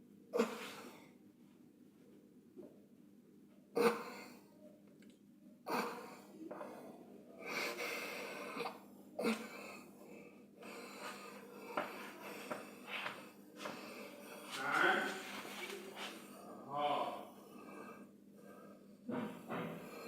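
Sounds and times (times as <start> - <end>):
person breathing: 5.8 - 20.0.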